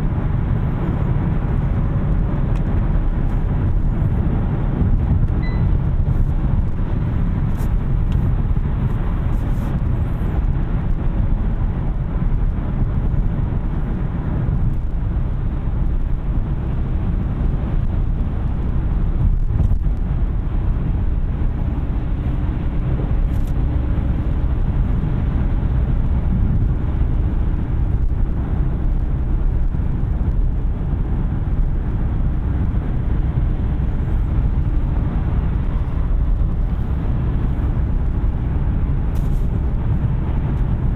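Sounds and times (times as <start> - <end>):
road and tyre noise: 0.0 - 40.9.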